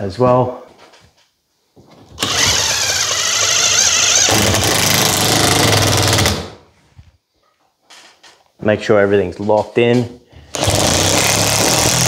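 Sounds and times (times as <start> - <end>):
power screwdriver driving screws: 2.2 - 6.5, 10.5 - 12.0.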